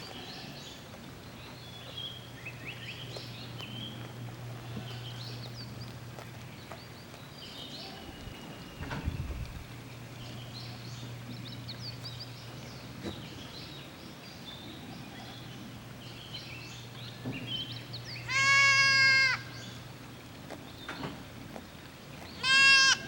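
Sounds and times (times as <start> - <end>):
goat bleating: 4.3 - 5.6, 18.2 - 19.6, 22.4 - 23.0.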